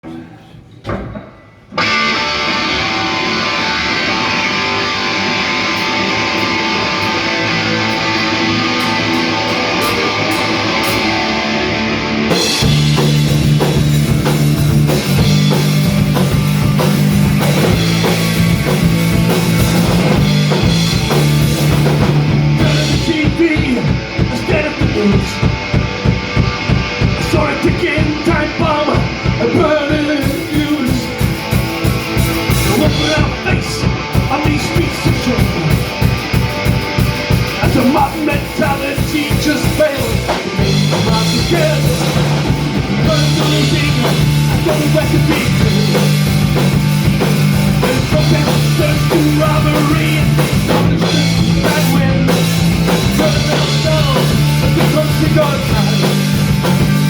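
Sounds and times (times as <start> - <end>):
electric guitar: 1.1 - 57.0
heavy low bass notes: 2.7 - 57.0
fast drum beat: 12.3 - 57.0.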